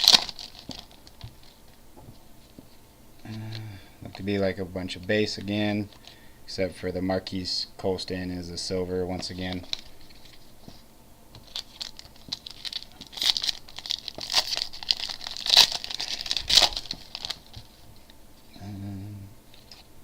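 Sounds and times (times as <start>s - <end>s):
wrapper crinkling and tearing: 0.0s - 1.6s, 9.2s - 10.5s, 11.4s - 18.1s.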